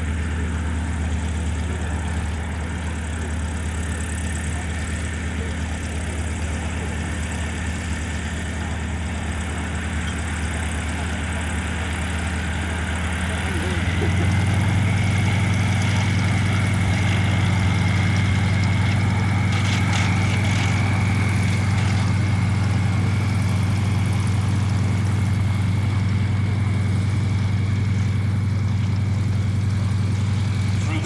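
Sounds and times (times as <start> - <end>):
light aircraft engine drone: 0.0 - 31.0.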